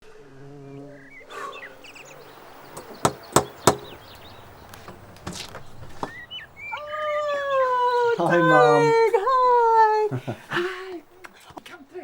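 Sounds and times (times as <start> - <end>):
birds chirping: 0.7 - 12.0
knocking on door: 2.4 - 6.2.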